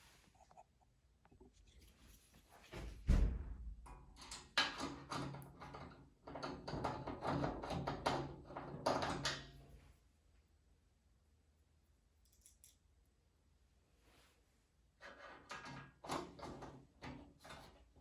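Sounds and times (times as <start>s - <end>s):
plastic knocking and clatter: 4.5s - 9.4s.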